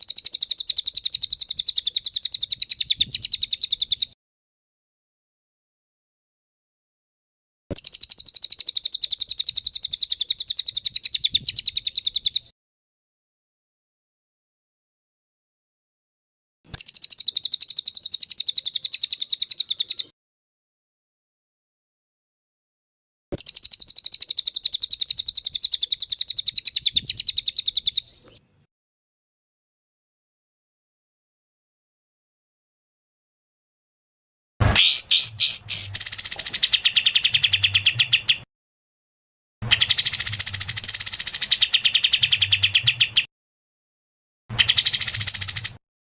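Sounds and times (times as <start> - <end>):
songbird rapid-fire trill: 0.0 - 4.0, 7.8 - 12.3, 23.4 - 28.0, 34.7 - 38.3, 39.7 - 43.3, 44.6 - 45.8.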